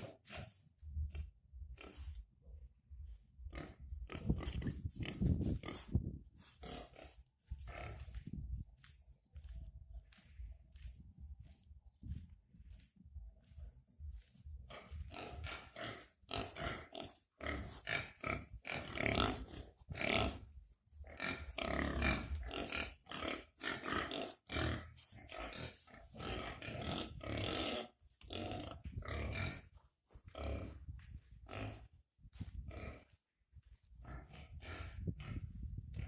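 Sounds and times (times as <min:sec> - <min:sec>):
pigs grunting: 0:00.0 - 0:02.3, 0:03.4 - 0:08.4, 0:14.6 - 0:33.2, 0:34.0 - 0:36.0.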